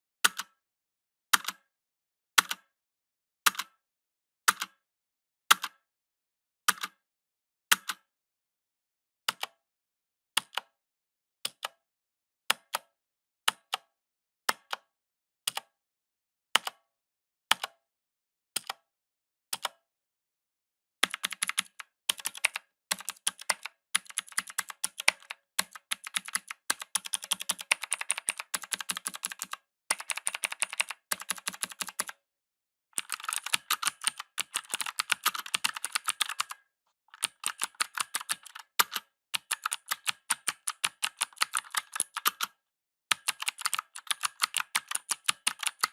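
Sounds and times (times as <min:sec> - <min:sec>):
mechanical keyboard keys clicking: 0:21.0 - 0:32.2, 0:33.0 - 0:42.5, 0:43.1 - 0:45.9.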